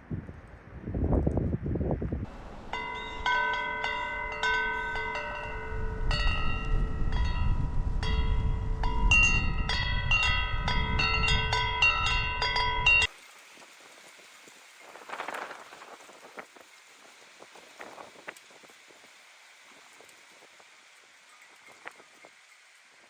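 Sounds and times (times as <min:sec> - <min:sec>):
wind rumbling on microphone: 0:00.0 - 0:23.0
wind chimes ringing: 0:02.7 - 0:13.1.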